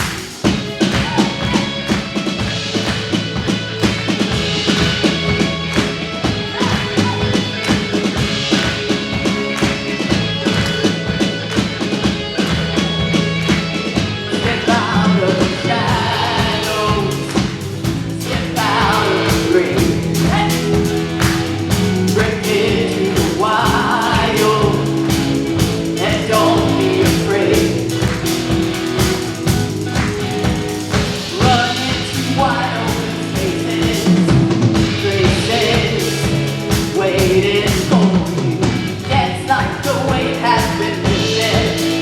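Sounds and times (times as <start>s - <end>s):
drum kit beat: 0.0s - 42.0s
live worship band playing: 0.0s - 42.0s
voices singing: 0.0s - 42.0s.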